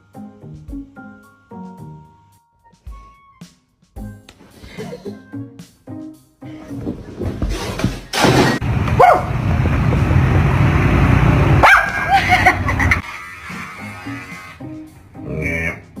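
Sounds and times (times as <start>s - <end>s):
dog barking and yelping: 9.0s - 9.3s, 11.6s - 12.5s.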